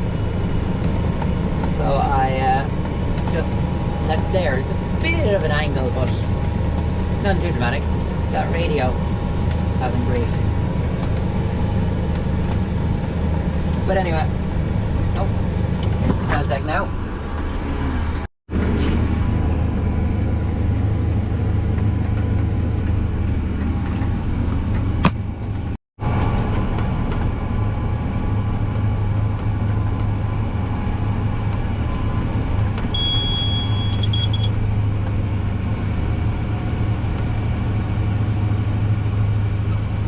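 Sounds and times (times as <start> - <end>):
tractor engine drone: 0.0 - 40.0
high electronic beep: 33.0 - 34.5.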